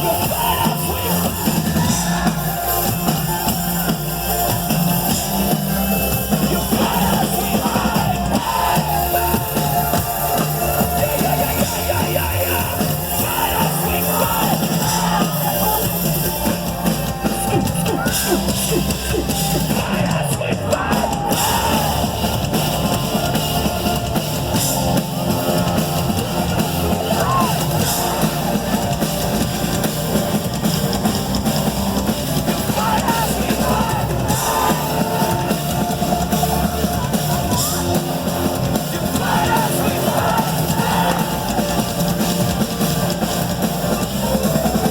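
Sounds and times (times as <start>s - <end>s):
distorted guitars: 0.0s - 44.9s
drums: 0.0s - 44.9s
live rock band playing: 0.0s - 44.9s
shouted vocals: 6.3s - 29.1s, 32.5s - 42.0s.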